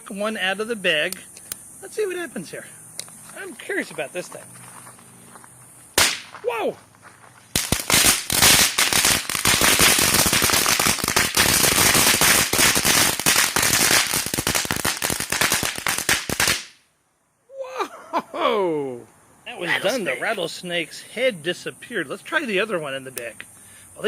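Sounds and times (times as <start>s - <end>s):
firework crackling: 5.9s - 6.4s, 7.5s - 16.8s.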